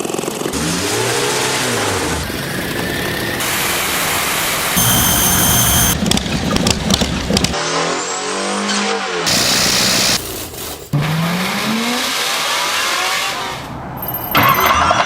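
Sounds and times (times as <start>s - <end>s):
engine revving up: 10.9s - 14.0s.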